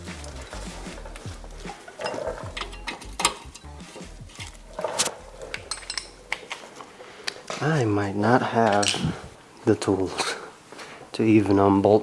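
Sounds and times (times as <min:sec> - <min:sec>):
hand tools clinking on steel: 0:00.0 - 0:06.8.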